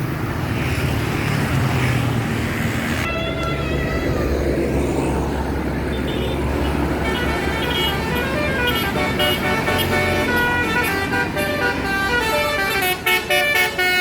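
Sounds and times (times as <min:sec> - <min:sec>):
bus engine rumble: 0:00.0 - 0:14.0
bus multi-tone horn tune: 0:03.0 - 0:04.2, 0:05.9 - 0:14.0.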